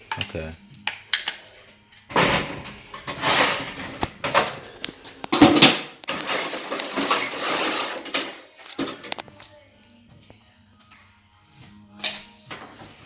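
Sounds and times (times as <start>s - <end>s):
metal parts clinking and scraping: 1.2s - 9.2s.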